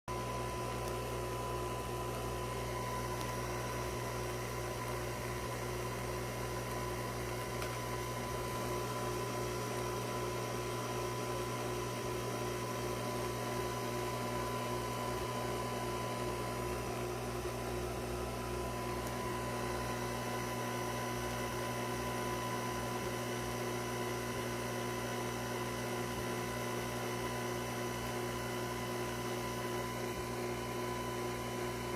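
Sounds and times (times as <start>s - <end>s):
coffee machine pump humming: 0.1s - 31.9s.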